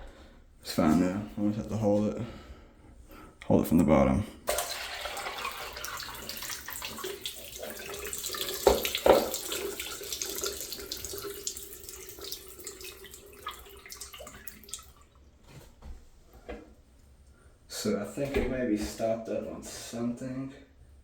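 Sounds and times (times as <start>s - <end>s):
toilet flushing water: 4.5s - 15.4s.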